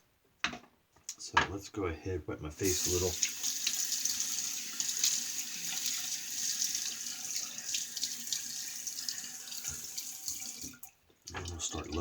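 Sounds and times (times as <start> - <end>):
tap water running into sink: 2.6 - 12.0.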